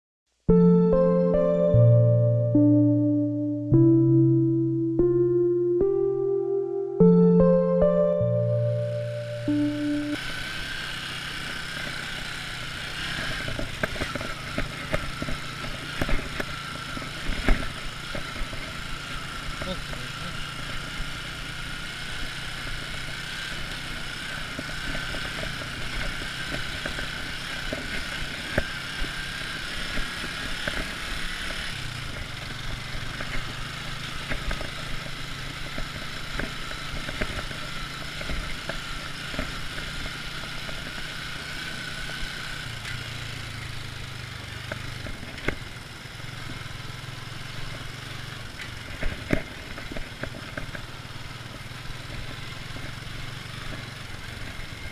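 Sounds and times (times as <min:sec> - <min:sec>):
high-pitched tone: 0:00.5 - 0:10.2
motorcycle engine idling: 0:08.8 - 0:54.9.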